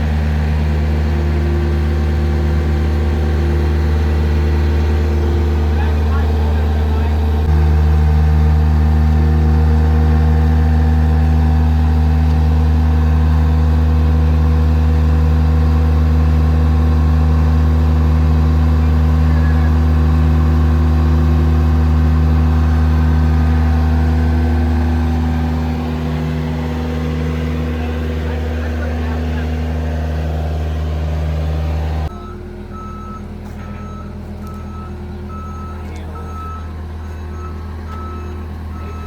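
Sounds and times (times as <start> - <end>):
engine droning: 0.0 - 39.0.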